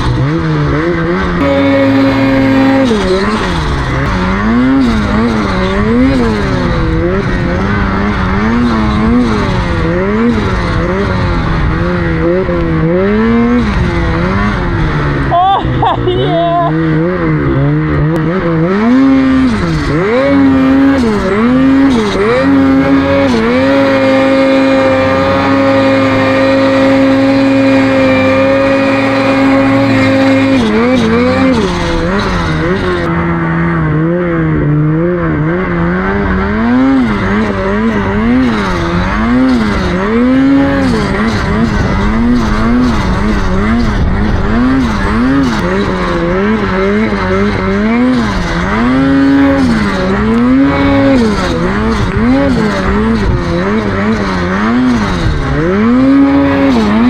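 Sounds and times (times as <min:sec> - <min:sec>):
snowmobile engine revving: 0:00.0 - 0:57.0.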